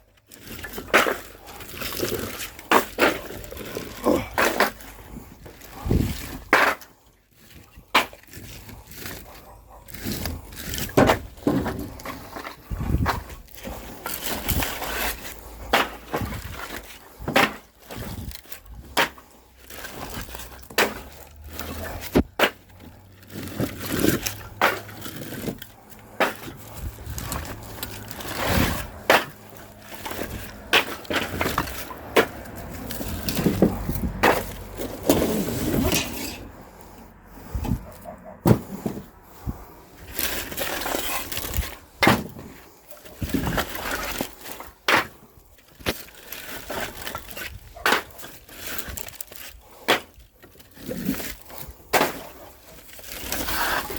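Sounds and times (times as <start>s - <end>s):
scraping and shuffling: 0.2s - 53.9s
logs knocking and clattering: 9.9s - 14.7s.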